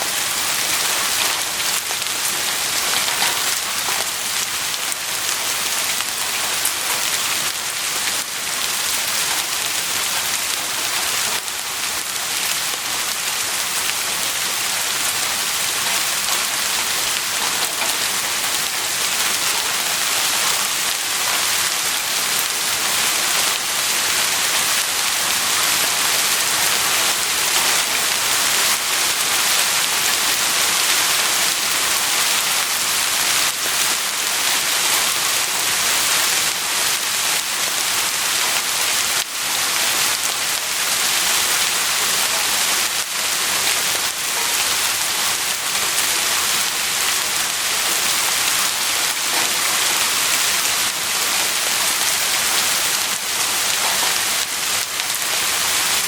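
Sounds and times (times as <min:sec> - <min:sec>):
heavy rain falling: 0:00.0 - 0:56.0
raindrops ticking: 0:00.1 - 0:14.4.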